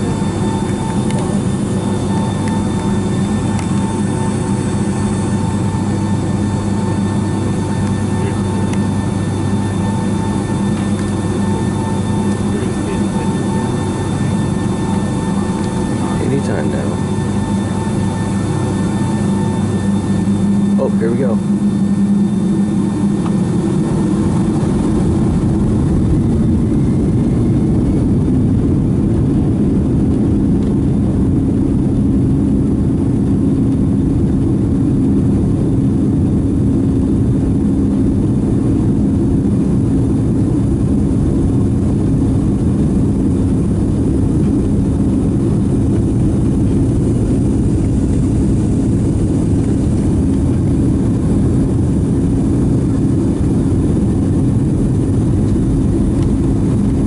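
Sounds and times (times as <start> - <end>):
jet engines droning in cabin: 0.0 - 57.0.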